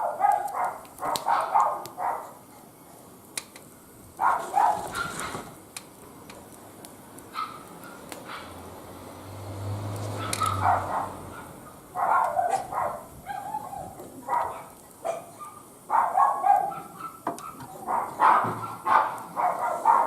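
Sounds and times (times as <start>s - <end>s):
dog barking: 0.0s - 2.4s, 4.2s - 5.5s, 7.4s - 8.6s, 10.2s - 20.0s.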